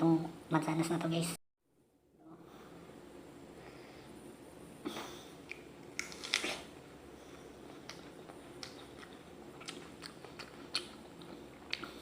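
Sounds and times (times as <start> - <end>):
apple crunching: 5.5 - 6.7, 7.8 - 12.0.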